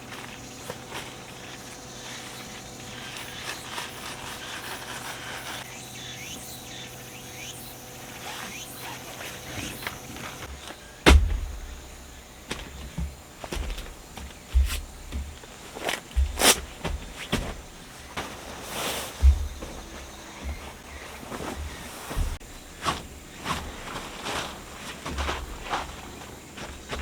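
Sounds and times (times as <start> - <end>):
insects calling: 0.0 - 27.0
low rumbles: 10.9 - 15.1
loud thump: 11.0 - 13.9
light knocks: 11.0 - 17.8.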